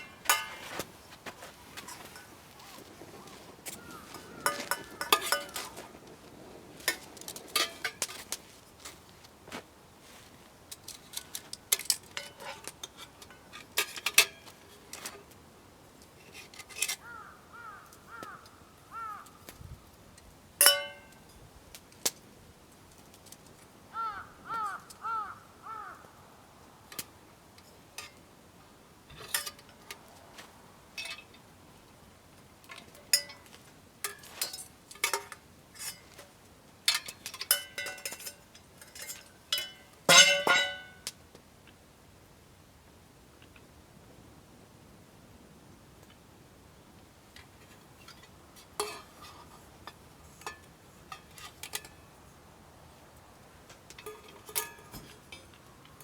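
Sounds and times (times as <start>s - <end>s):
metal cookware clinking: 0.0s - 0.8s, 3.9s - 6.0s, 6.8s - 8.2s, 20.6s - 21.2s, 29.1s - 29.7s, 32.7s - 36.3s, 36.9s - 41.1s, 48.0s - 52.1s, 53.7s - 55.6s
bird calling: 2.6s - 5.9s, 17.0s - 19.5s, 23.9s - 26.2s.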